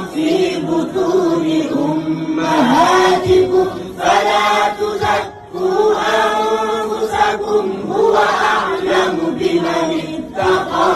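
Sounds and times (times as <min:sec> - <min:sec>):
person chanting melodic recitation: 0:01.4 - 0:03.9.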